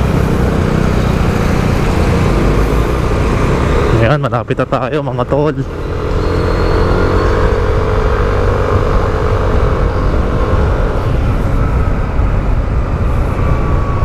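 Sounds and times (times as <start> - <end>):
motorcycle engine cruising: 0.0 - 14.0
wind rumble on microphone: 5.7 - 14.0.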